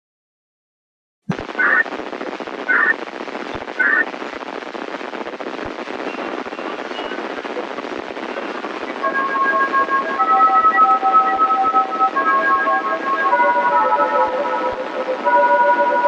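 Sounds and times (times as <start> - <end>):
short radio bursts: 1.3 - 8.6
steady radio hiss: 1.3 - 16.0.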